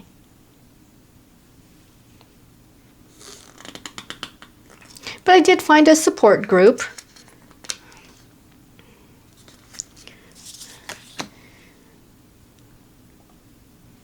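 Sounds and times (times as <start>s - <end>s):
cards clicking and rustling: 3.2s - 5.2s, 6.8s - 8.3s, 9.3s - 11.4s.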